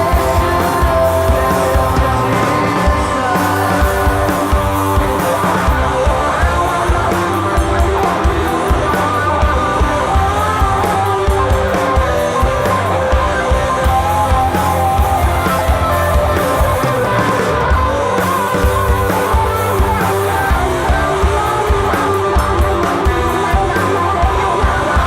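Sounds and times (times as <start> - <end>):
rock band playing live: 0.0 - 25.0.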